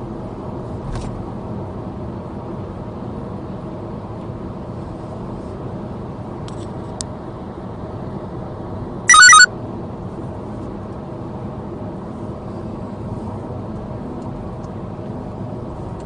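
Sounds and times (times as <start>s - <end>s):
loud electronic chirp: 9.1s - 9.5s.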